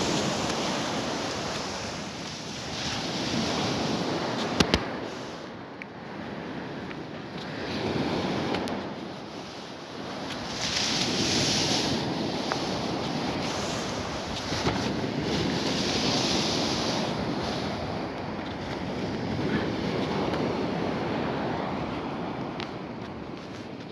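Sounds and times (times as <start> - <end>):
sea water washing and splashing: 0.0 - 5.6, 8.2 - 18.1.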